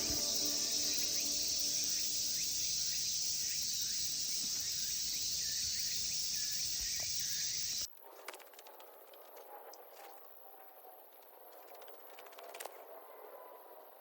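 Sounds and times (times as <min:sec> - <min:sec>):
faint short insect chirps: 0:00.0 - 0:07.9
insects chorus hiss: 0:00.0 - 0:07.9.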